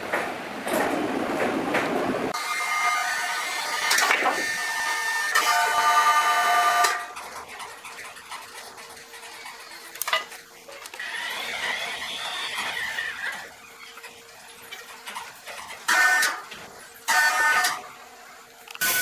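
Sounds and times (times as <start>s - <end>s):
saw cutting timber whining: 11.0s - 13.5s.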